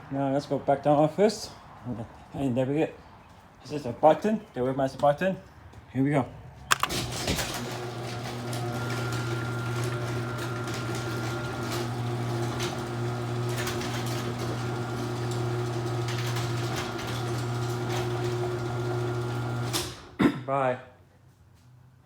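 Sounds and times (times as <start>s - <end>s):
garage door opener motor hum: 6.7s - 20.2s.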